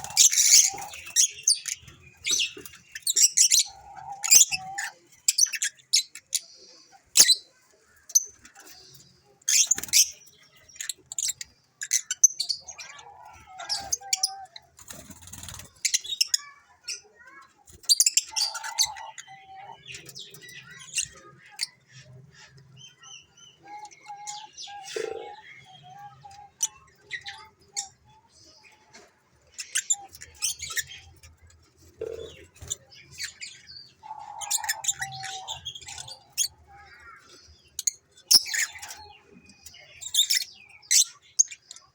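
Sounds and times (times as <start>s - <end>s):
birds chirping shrilly: 0.0s - 21.8s, 32.0s - 41.7s.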